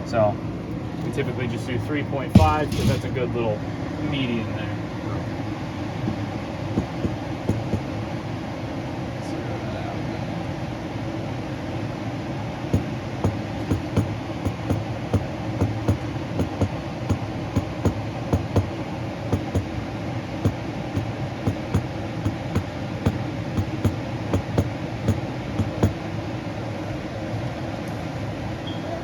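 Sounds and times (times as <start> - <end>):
furnace fan motor running: 0.0 - 28.7
sharp ticks: 13.2 - 14.8, 15.6 - 18.7, 19.4 - 19.7, 21.0 - 26.0.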